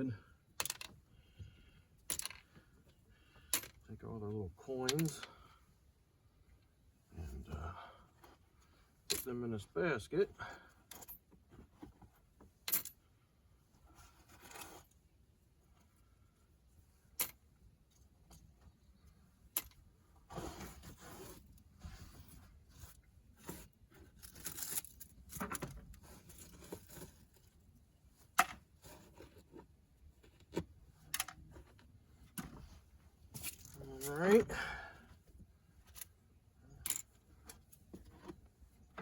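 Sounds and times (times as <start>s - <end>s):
rustling and scraping: 10.9s - 12.8s, 13.7s - 15.1s, 17.9s - 34.5s, 35.2s - 39.0s.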